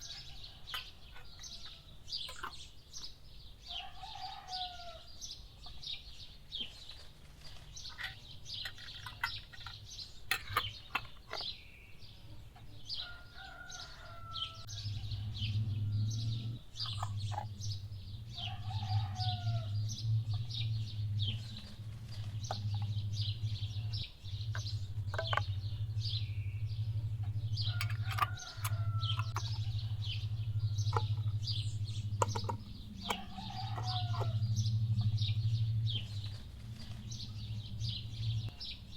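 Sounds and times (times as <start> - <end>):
hens clucking: 0.0 - 2.8, 26.9 - 35.1
small birds chirping: 0.0 - 38.9
low steady hum: 13.8 - 38.9.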